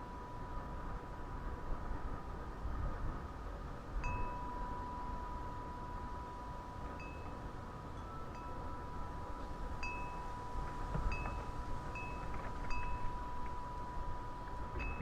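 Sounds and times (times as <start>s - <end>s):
wind rumble on microphone: 0.0s - 15.0s
wind chimes ringing: 4.0s - 15.0s.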